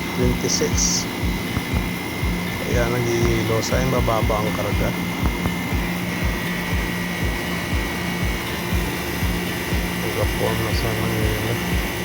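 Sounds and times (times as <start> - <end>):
air conditioner humming with thuds: 0.0 - 12.0.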